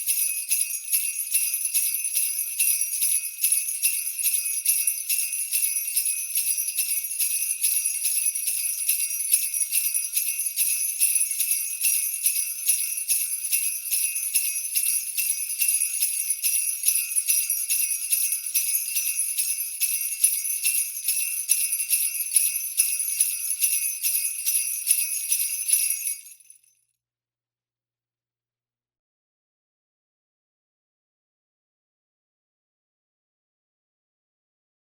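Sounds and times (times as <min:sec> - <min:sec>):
jingle bells shaking: 0:00.0 - 0:26.8.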